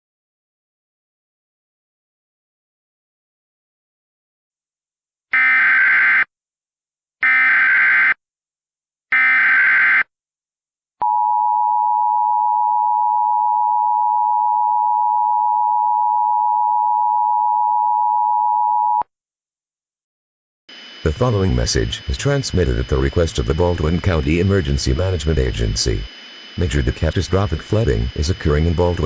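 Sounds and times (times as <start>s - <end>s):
digital data tones: 20.7s - 29.0s.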